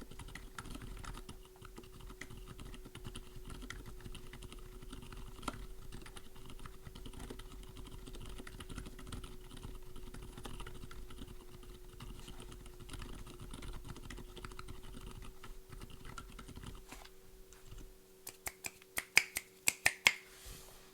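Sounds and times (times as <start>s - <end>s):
muted mechanical keyboard typing: 0.0s - 16.9s.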